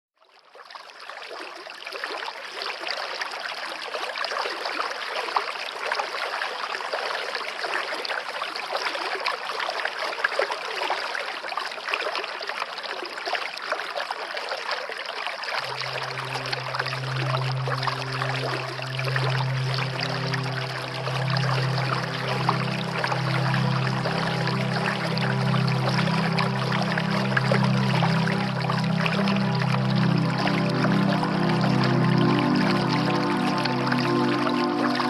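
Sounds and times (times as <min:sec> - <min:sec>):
background music low tone: 0:15.6 - 0:35.0
waterfall rushing and splashing: 0:15.6 - 0:35.0.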